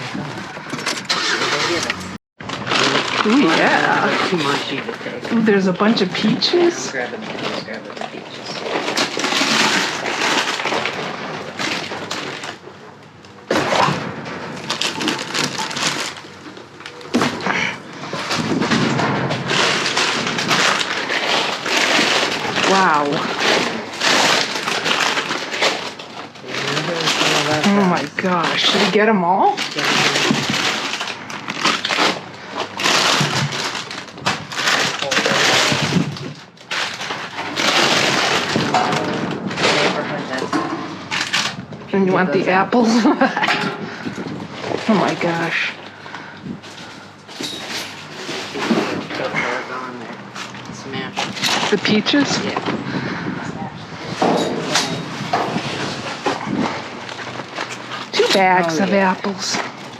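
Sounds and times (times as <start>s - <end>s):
rummaging crackling and rustling: 0.0s - 59.9s
knocks and thuds of items: 17.0s - 26.0s.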